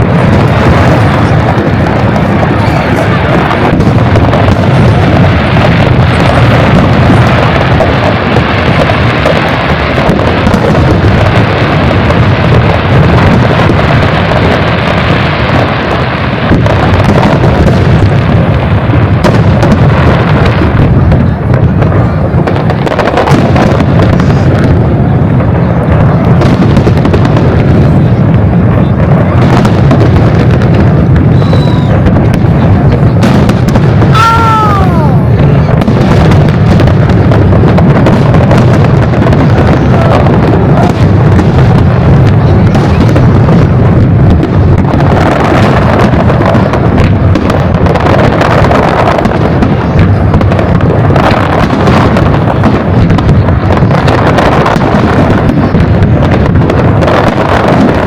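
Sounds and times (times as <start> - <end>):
fireworks booming and crackling: 0.0 - 58.0
falling firework whistle: 31.2 - 32.2, 34.0 - 35.3.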